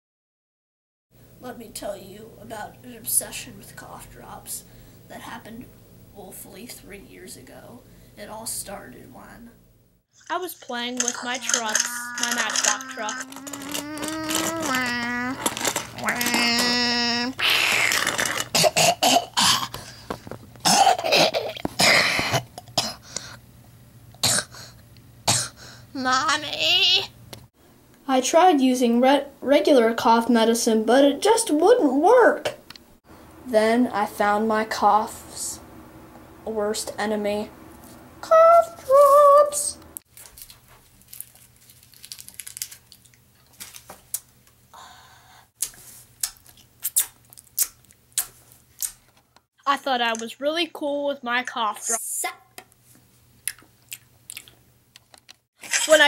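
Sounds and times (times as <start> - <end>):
wrapper crinkling: 11.0 - 18.6, 40.1 - 44.2
wrapper tearing rustle: 11.0 - 18.6, 40.1 - 44.2
child coughing: 11.8 - 15.4, 18.5 - 19.8, 20.6 - 23.0, 24.2 - 24.5, 25.3 - 25.6.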